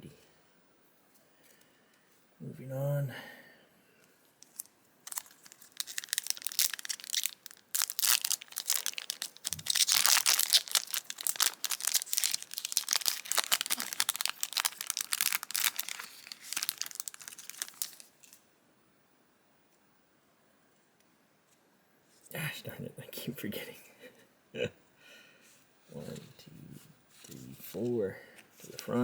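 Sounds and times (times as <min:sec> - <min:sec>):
foil wrapper crinkling and tearing: 0:04.4 - 0:18.4.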